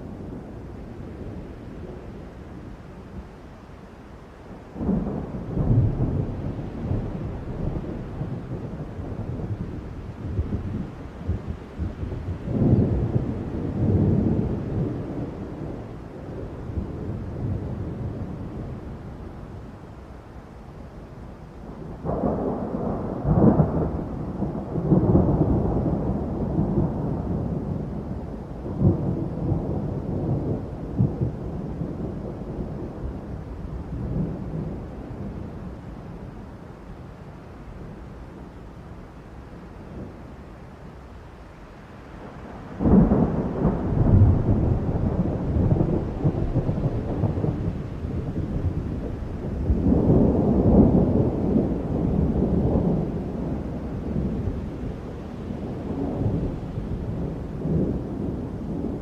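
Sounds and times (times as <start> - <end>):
rolling thunder rumble: 4.5 - 19.9, 20.8 - 59.0
thunder crack: 42.8 - 54.5.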